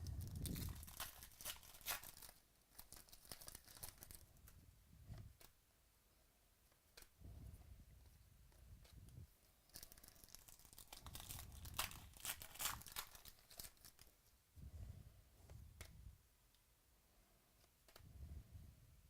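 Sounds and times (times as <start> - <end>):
card wrapper ripping and crinkling: 0.0 - 4.3, 9.7 - 14.2.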